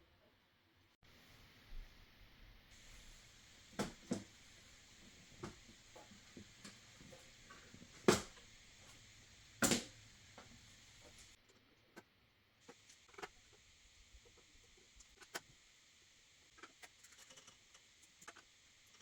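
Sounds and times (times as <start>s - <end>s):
low steady hiss: 0.0s - 11.4s.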